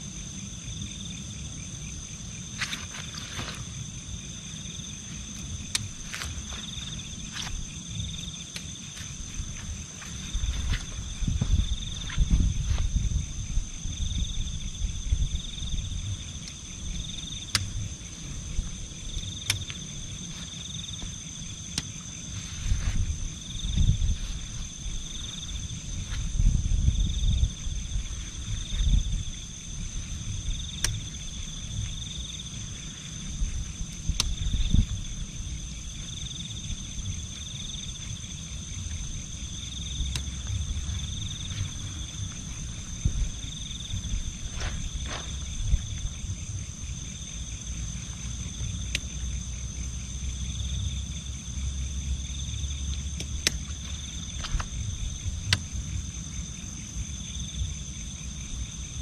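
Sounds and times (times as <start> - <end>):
insects chirring: 0.0 - 59.0
pulsing insect chirp: 0.0 - 59.0
rustling and handling noise: 2.5 - 4.0, 5.1 - 13.0, 40.2 - 46.2.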